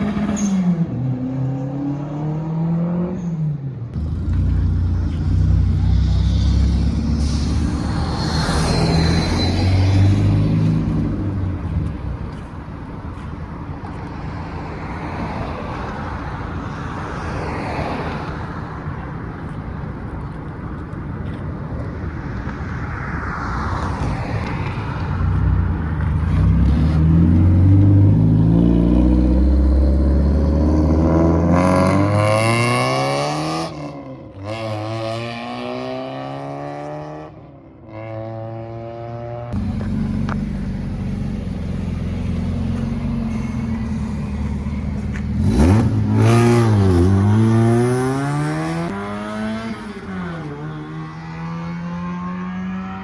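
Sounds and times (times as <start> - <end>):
car engine rumbling and accelerating: 0.0 - 53.0.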